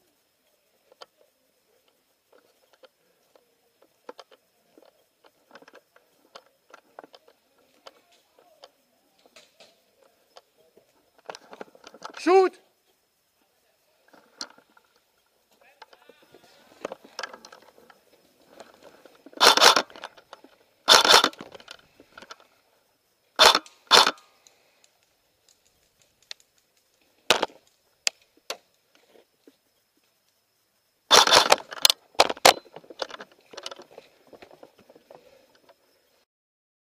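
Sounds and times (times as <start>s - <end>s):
rustling of gear: 16.0s - 22.5s, 31.1s - 36.2s
airsoft guns firing: 19.4s - 19.9s, 20.9s - 21.4s, 23.4s - 24.2s, 31.1s - 31.8s.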